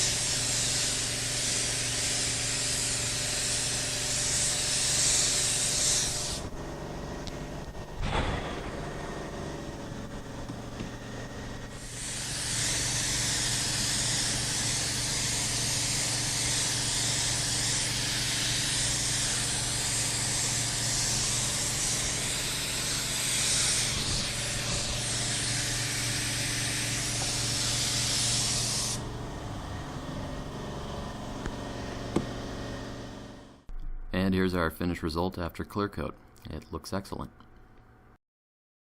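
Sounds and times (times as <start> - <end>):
spray gun hissing: 0.0 - 6.5, 11.8 - 29.1.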